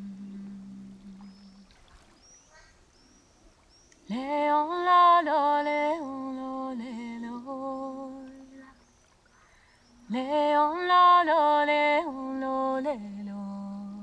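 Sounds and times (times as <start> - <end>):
person singing wordless tone: 0.0 - 1.4
faint bird chirps: 0.0 - 4.5, 7.6 - 10.9.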